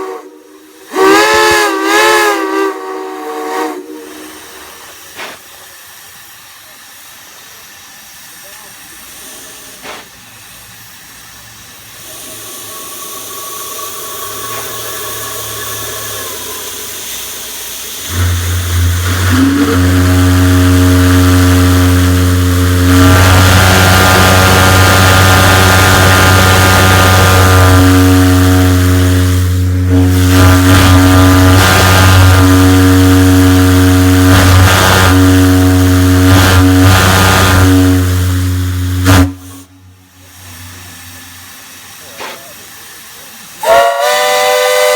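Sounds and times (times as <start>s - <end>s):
deep steam whistle: 0.0s - 10.0s, 10.6s - 42.1s, 42.8s - 44.9s
steam hissing: 0.0s - 44.9s.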